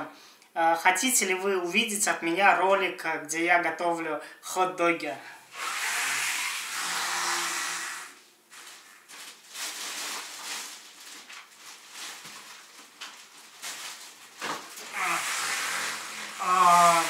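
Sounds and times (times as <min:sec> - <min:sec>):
plastic bag rustling: 0:08.5 - 0:17.0.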